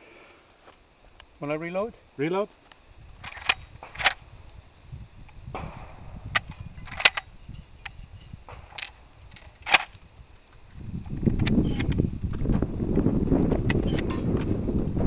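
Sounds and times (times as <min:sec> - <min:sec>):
shotgun reloading clicks: 0:02.7 - 0:04.2, 0:06.3 - 0:07.3, 0:08.5 - 0:10.0.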